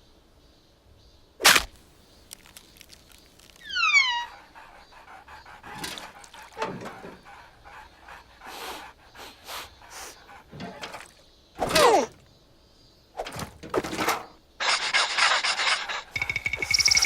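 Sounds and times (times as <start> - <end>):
squeaky gliding vocal cry: 3.5 - 11.0, 11.6 - 12.2
cartoon nonsense vocal noises: 11.6 - 12.2.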